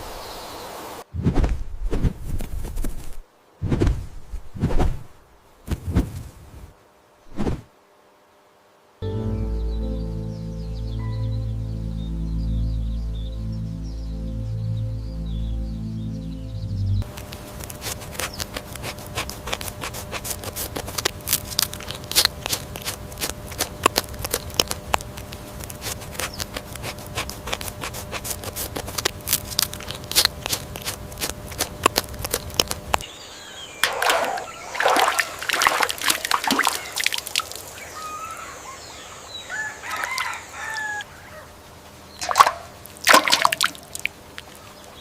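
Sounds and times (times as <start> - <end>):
sharp irregular ticks: 17.0 - 33.0
water splashing and sloshing: 33.8 - 38.0, 42.2 - 45.0.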